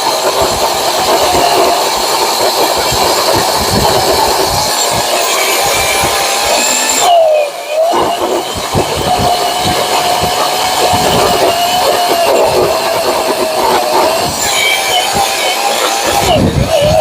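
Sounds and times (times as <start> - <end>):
electric chainsaw motor whine: 0.0 - 17.0
chain rasping through wood: 7.9 - 17.0.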